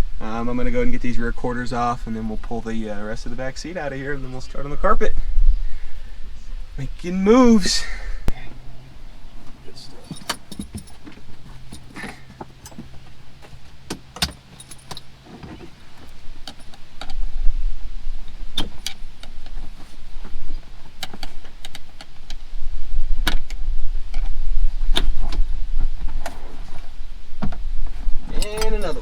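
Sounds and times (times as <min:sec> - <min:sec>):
low rumble: 0:00.0 - 0:13.8.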